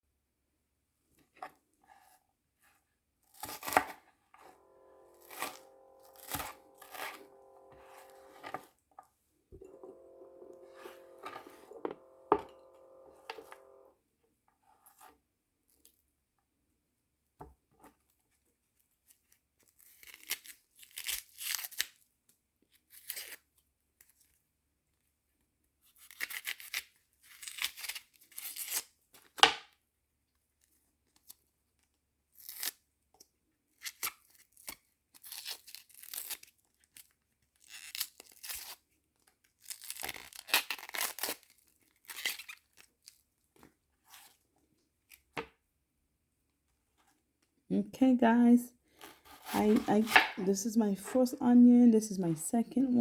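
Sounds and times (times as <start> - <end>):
onion skin tearing: 3.3 - 4.0, 19.8 - 21.9, 26.0 - 28.8, 32.4 - 32.8, 33.9 - 38.8, 39.6 - 42.9.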